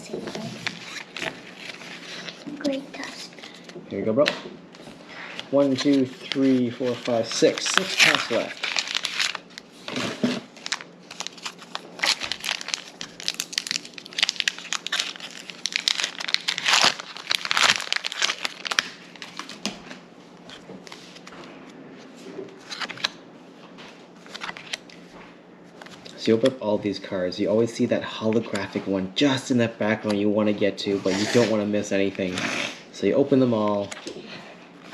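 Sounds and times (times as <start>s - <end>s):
foil wrapper crinkling and tearing: 5.6s - 10.0s, 10.6s - 19.6s.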